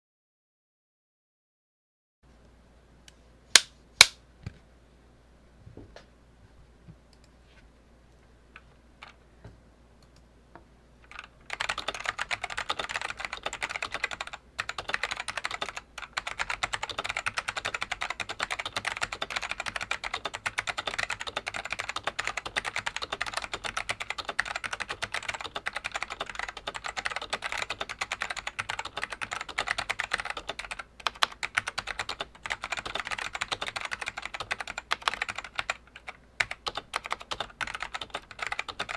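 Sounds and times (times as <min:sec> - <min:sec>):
mechanical keyboard typing: 0:11.1 - 0:38.9.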